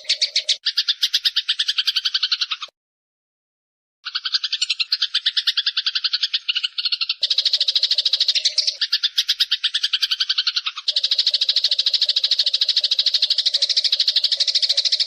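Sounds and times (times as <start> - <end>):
songbird trilling: 0.0 - 2.7, 4.0 - 15.0.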